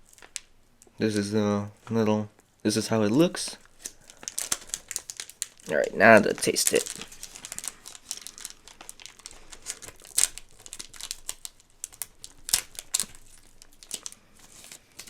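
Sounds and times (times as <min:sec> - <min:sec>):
snack packet crinkling: 0:00.0 - 0:00.6, 0:03.3 - 0:15.0.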